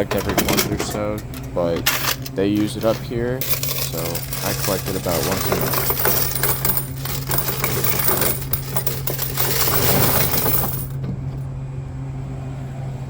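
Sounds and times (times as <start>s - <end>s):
coins jingling and clattering: 0.0s - 11.0s.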